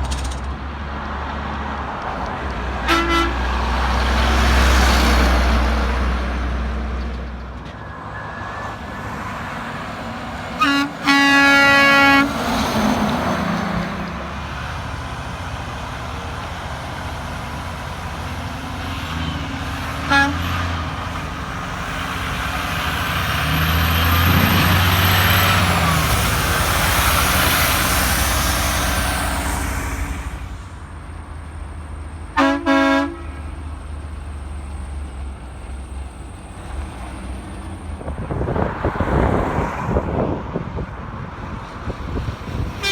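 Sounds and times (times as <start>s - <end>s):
truck engines and tyres: 0.0s - 42.9s
truck air horn blasts: 2.8s - 3.7s, 10.6s - 12.5s, 20.0s - 20.7s, 32.3s - 33.7s.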